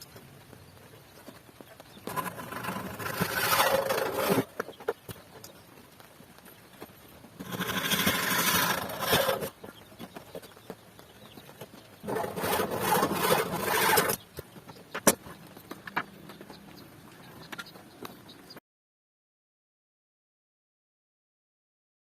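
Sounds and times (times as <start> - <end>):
hand tool scraping wood: 2.0 - 4.7, 7.4 - 9.6, 12.0 - 14.3.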